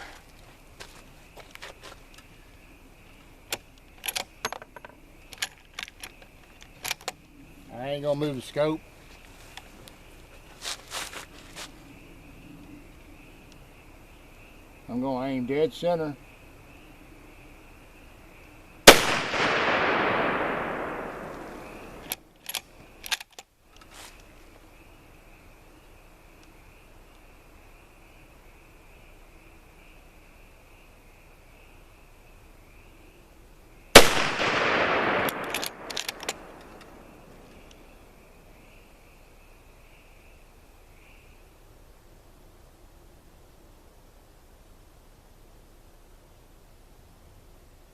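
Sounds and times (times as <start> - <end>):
rifle shot with echo: 18.8 - 22.1, 34.0 - 37.4
sharp clicks: 18.9 - 23.9, 34.0 - 37.8.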